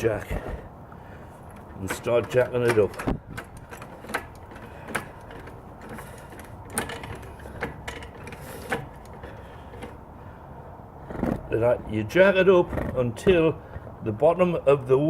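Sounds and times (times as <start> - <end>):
floor jack clicking: 1.5 - 10.0.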